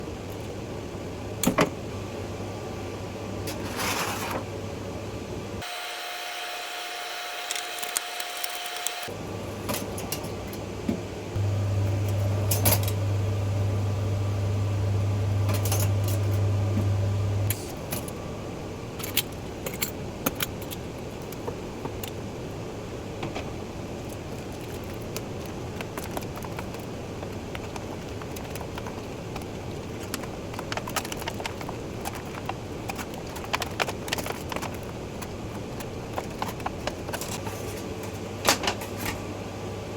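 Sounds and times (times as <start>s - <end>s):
steady low hum: 4.4s - 39.9s
plastic keycaps clicking and rattling: 27.5s - 34.9s.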